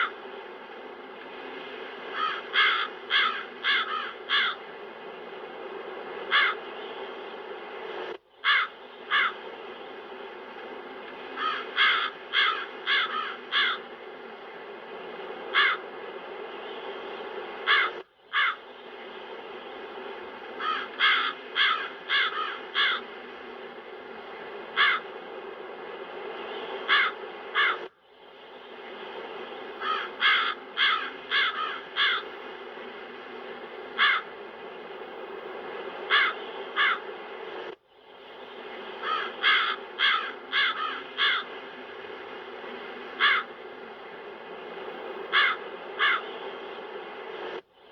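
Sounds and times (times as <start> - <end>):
wind: 0.0 - 47.9
crows cawing: 2.1 - 4.7, 6.3 - 6.7, 8.4 - 9.4, 11.4 - 13.9, 15.5 - 15.8, 17.6 - 18.7, 20.6 - 23.1, 24.8 - 25.1, 26.9 - 27.9, 29.8 - 32.3, 34.0 - 34.3, 36.1 - 37.1, 39.0 - 41.6, 43.2 - 43.6, 45.3 - 46.3.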